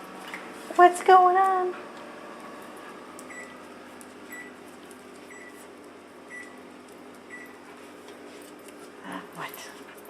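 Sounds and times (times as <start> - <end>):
steady mechanical hum: 0.0 - 10.0.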